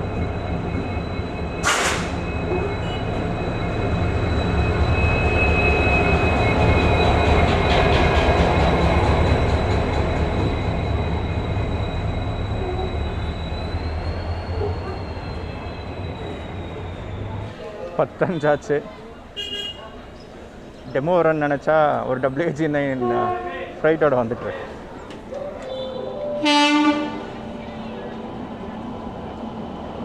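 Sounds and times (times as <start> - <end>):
train high whine: 0.0 - 18.0, 24.7 - 30.0
train rumbling: 0.0 - 18.4, 21.9 - 30.0.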